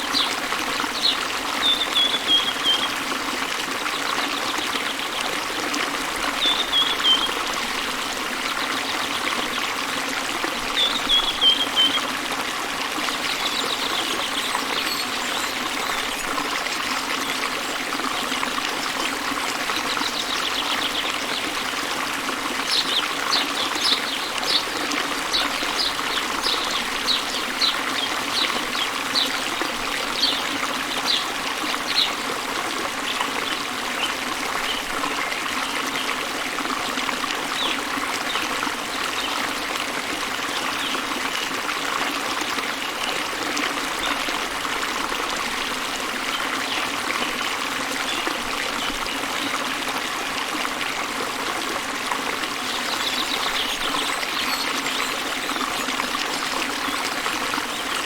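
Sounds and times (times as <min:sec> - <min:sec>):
waterfall and river rushing: 0:22.7 - 0:29.6.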